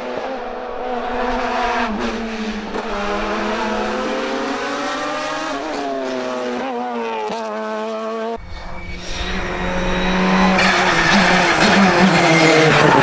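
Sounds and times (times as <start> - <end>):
race car engine accelerating: 0.0 - 13.0
rough low engine note: 8.4 - 13.0.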